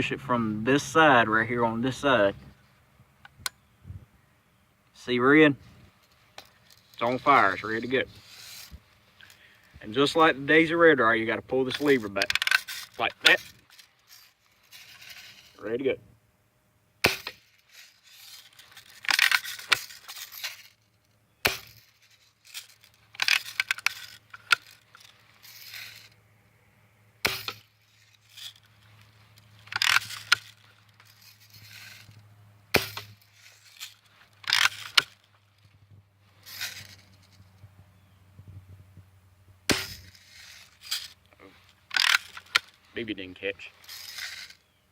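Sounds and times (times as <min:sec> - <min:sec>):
rifle lever cocking rattle: 0:18.8 - 0:20.4, 0:34.4 - 0:35.2, 0:41.9 - 0:42.7.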